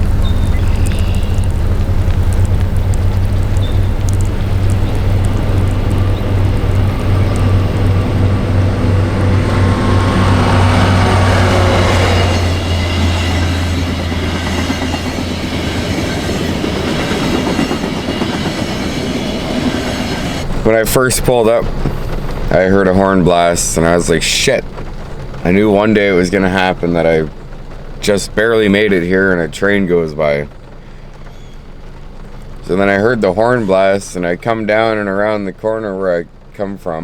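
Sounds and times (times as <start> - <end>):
train passing close by: 0.0 - 35.6
steady low hum: 0.0 - 36.9.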